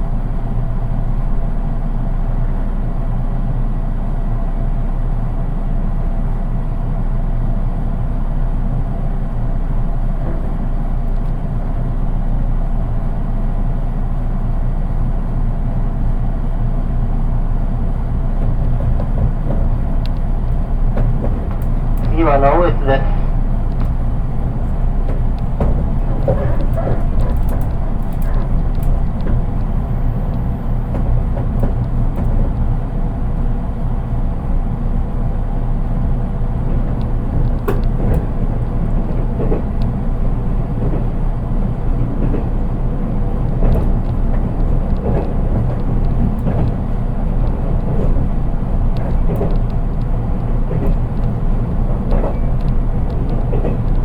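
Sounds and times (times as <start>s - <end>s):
train wheels rumbling on rail: 0.0s - 54.0s
running gear clicks and knocks: 23.3s - 32.7s, 36.7s - 40.2s, 41.8s - 54.0s.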